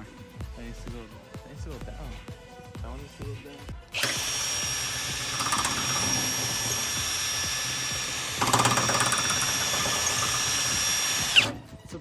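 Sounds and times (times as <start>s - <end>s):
drill bit grinding metal: 4.0s - 11.6s
power drill whining: 4.0s - 11.7s.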